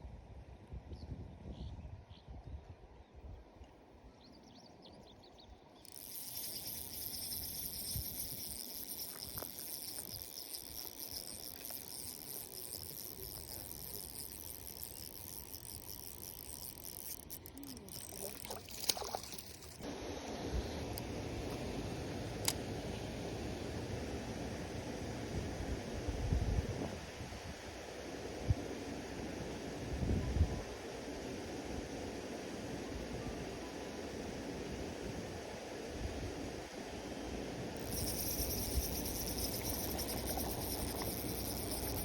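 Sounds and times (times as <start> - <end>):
insects chirping: 5.5 - 19.9, 37.8 - 42.0.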